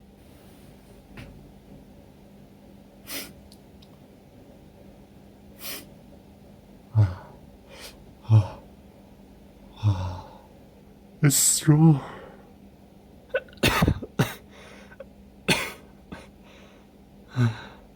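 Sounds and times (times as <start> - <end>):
sharp noisy breaths in: 5.6 - 5.9
person sneezing: 15.5 - 16.3.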